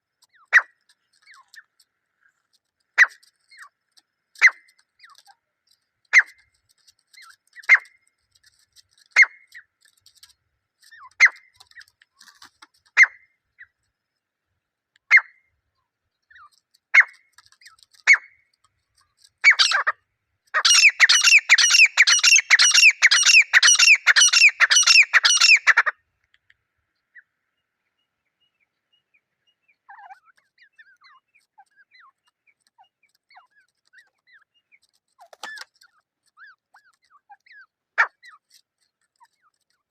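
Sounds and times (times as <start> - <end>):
francolin calling: 20.6 - 25.9.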